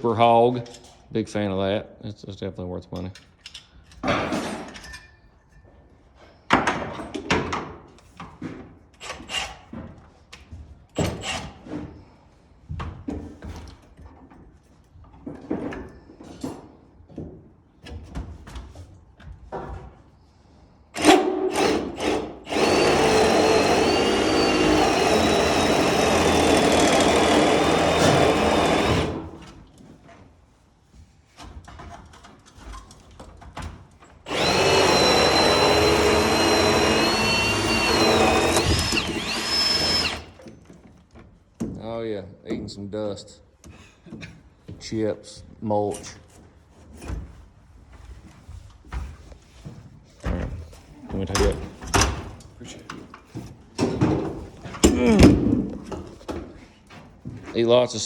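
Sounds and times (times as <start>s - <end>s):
drill boring through wood: 21.0s - 29.3s, 34.3s - 40.4s.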